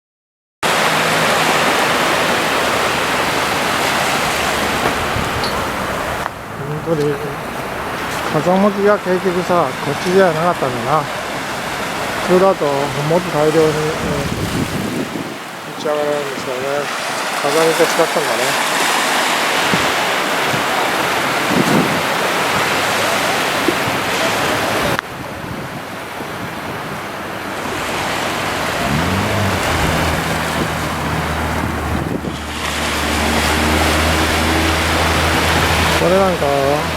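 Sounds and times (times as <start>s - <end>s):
sea surf washing onto beach: 0.6s - 36.9s
wind buffeting microphone: 1.2s - 15.6s, 21.4s - 22.8s, 23.7s - 36.9s.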